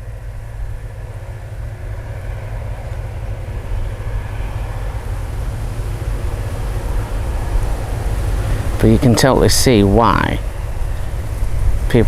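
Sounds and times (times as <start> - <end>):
distant vehicle rumble: 0.0 - 12.0
rushing sound: 1.9 - 12.0.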